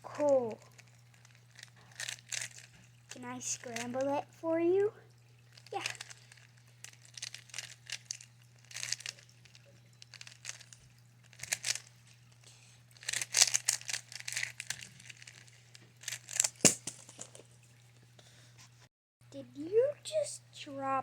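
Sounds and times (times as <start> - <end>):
plastic cube clicking as turned: 1.6 - 2.7, 5.6 - 9.3, 10.1 - 11.9, 13.0 - 17.2.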